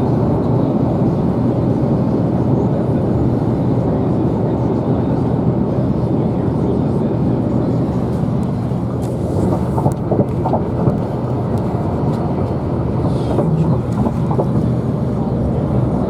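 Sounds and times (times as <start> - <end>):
vehicle road and engine rumble: 6.9 - 16.0.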